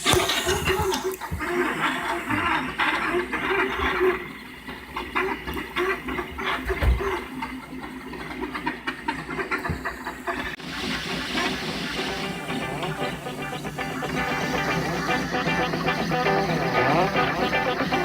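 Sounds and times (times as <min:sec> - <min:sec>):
music: 0:12.0 - 0:18.0.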